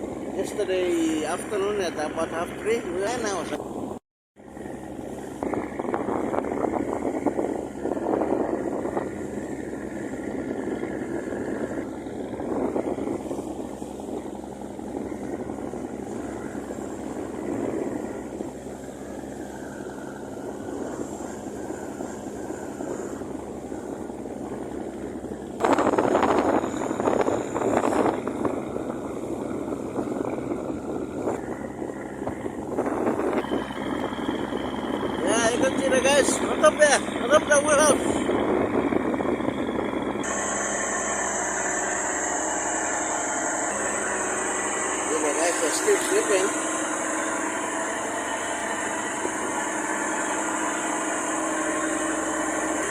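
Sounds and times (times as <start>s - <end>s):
ship engine droning: 0.0s - 52.9s
wind: 0.0s - 52.9s
water rushing: 4.6s - 52.9s.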